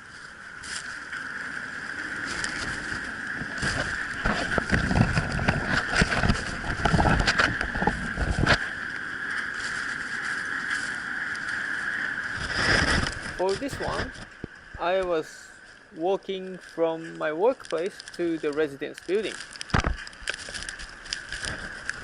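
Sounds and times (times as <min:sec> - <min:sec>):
blizzard wind buffeting microphone: 0:00.0 - 0:15.6
steady hiss: 0:00.0 - 0:22.0.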